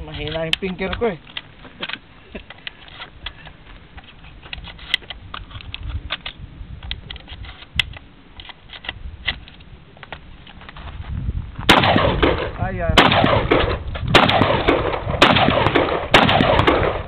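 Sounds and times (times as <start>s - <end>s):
shotgun clicks and taps: 0.1s - 10.7s.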